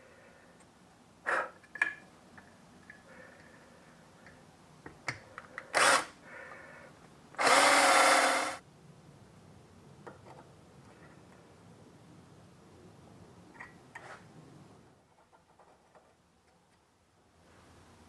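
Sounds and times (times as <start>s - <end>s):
power drill running: 5.7s - 6.1s, 7.4s - 8.6s.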